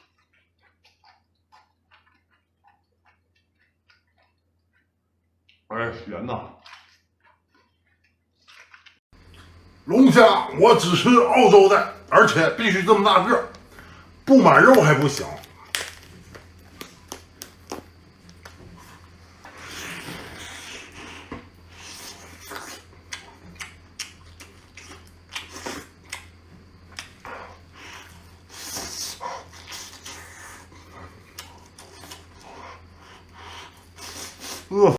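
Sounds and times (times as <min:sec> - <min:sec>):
chewing and shell crunching: 0:00.0 - 0:05.6, 0:06.6 - 0:34.7
slurping: 0:06.6 - 0:26.3, 0:27.0 - 0:34.8
low steady hum: 0:09.2 - 0:34.0.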